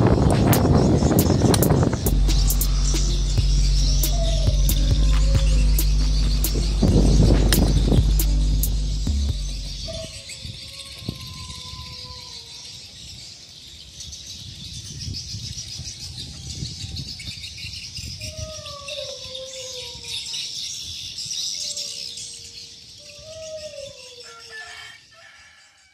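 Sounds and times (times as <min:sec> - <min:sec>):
low rumble: 0:00.0 - 0:10.2
high-pitched chirping chorus: 0:00.0 - 0:24.9
distant rooster crowing: 0:24.2 - 0:25.9.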